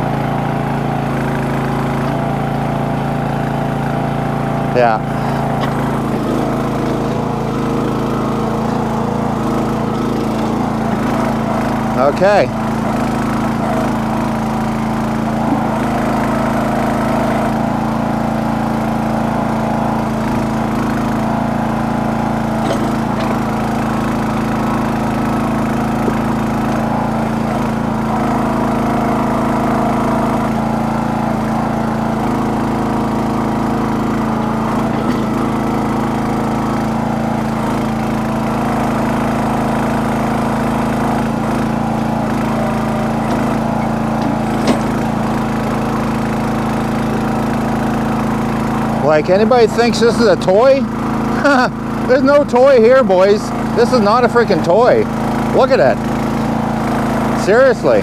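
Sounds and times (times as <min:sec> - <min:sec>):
small backhoe engine running: 0:00.0 - 0:58.0.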